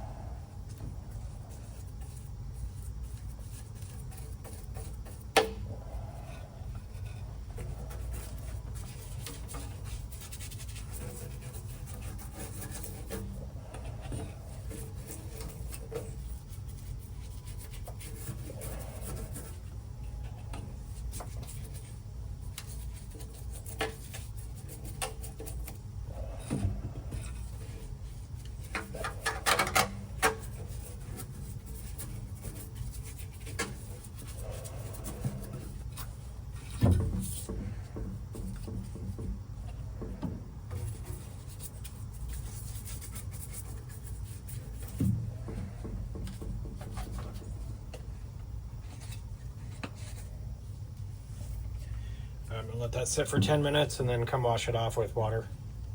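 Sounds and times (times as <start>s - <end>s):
low background rumble: 0.0s - 29.4s
rubbing and scraping on metal: 0.0s - 50.6s.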